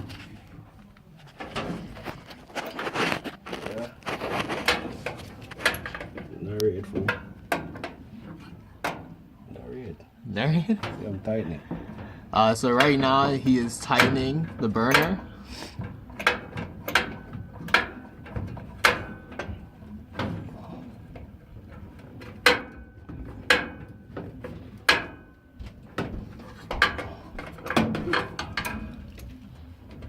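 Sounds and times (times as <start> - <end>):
tools clanking on metal housing: 4.4 - 9.2, 10.7 - 29.4.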